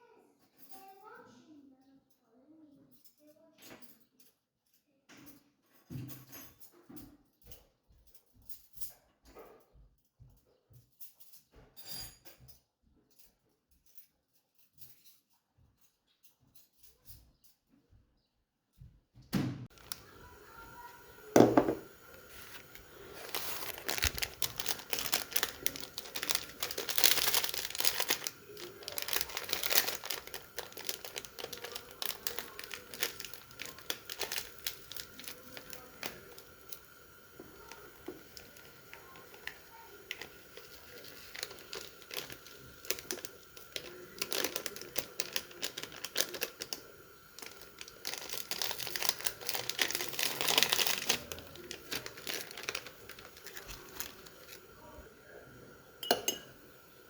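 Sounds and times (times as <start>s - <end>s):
crinkling and rustling: 19.6s - 55.4s
faint steady hum: 19.7s - 57.0s.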